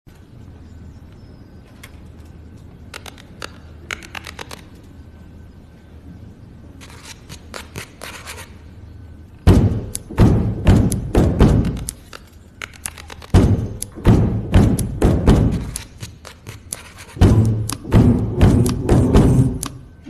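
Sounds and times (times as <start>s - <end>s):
low hum: 8.5s - 20.0s
loud thuds: 9.5s - 11.9s, 13.3s - 15.8s, 17.2s - 19.8s.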